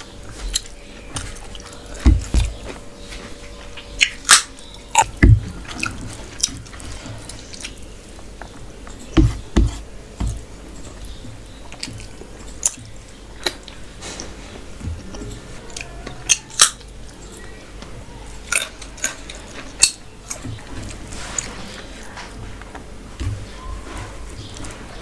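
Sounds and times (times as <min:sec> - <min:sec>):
chewing and mouth sounds: 0:00.3 - 0:17.2
soft low knocks: 0:02.0 - 0:02.9, 0:05.1 - 0:07.3, 0:09.2 - 0:10.5.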